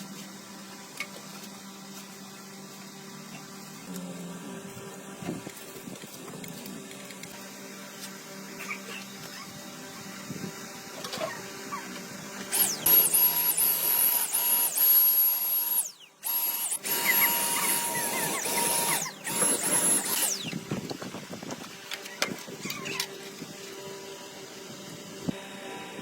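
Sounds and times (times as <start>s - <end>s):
power grinder whining: 10.7s - 20.7s.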